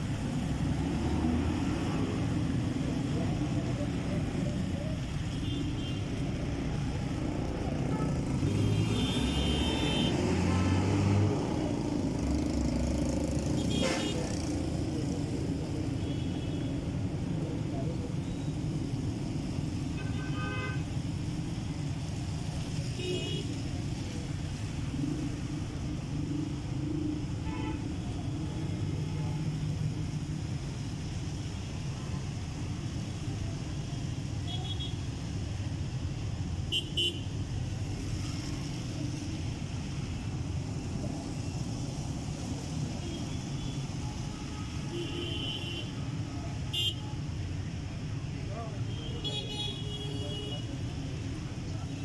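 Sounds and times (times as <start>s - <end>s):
vehicle engine humming: 0.0s - 20.0s
road traffic rumble: 0.0s - 52.0s.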